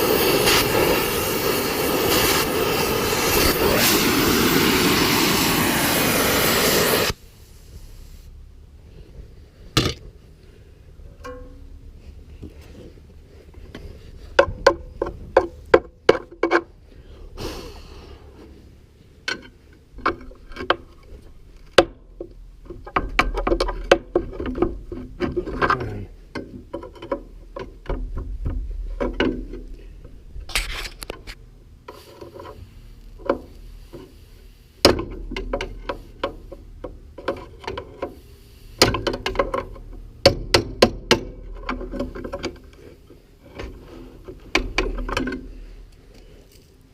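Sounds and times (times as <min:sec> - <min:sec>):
short hissing bursts: 0:00.0 - 0:08.4, 0:17.3 - 0:18.4, 0:38.1 - 0:38.9.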